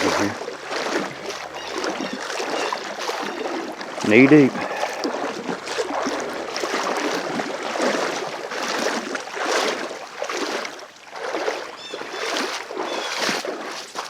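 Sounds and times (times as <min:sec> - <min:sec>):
water sloshing around wading legs: 0:00.0 - 0:14.0.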